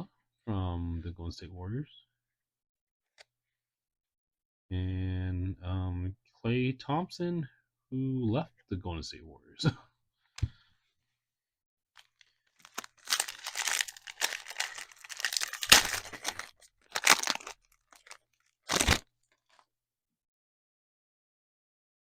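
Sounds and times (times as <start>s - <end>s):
plastic wrapper tearing and crinkling: 12.0s - 19.7s.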